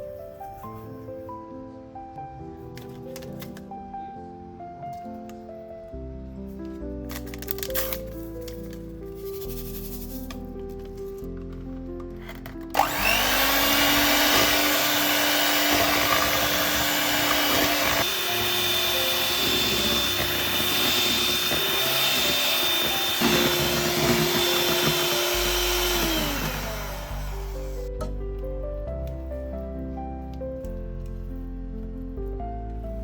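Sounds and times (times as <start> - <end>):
electric mixer motor whining: 12.8 - 27.9.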